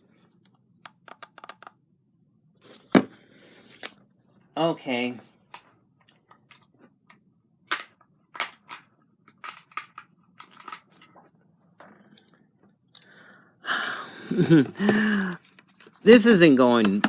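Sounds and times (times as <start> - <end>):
plastic clicks and knocks: 0.8 - 1.8.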